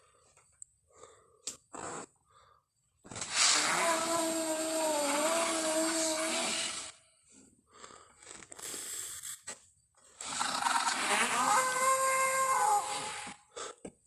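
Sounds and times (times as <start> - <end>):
dinosaur call with wavering pitch: 11.1 - 13.4.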